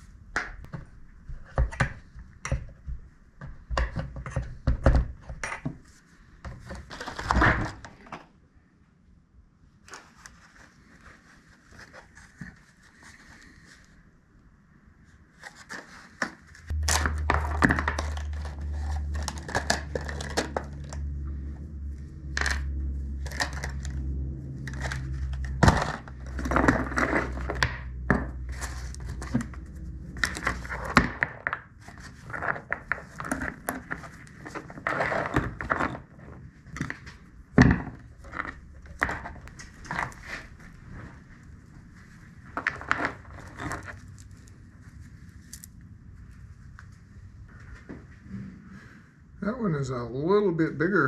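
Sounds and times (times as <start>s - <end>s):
steady low hum: 16.7s - 50.8s.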